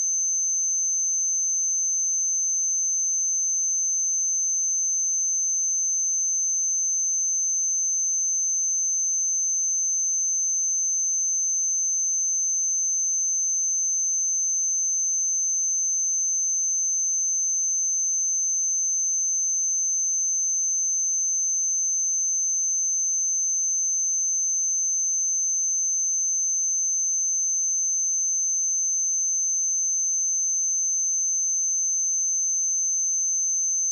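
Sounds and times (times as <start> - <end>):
high-pitched sine test tone: 22.2 - 33.9.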